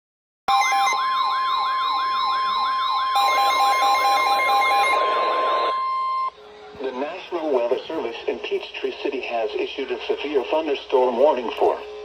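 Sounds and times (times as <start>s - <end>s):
sweeping siren-like tone: 0.5s - 6.4s
intermittent beeping: 0.5s - 12.0s
steady high warning tone: 0.5s - 12.0s.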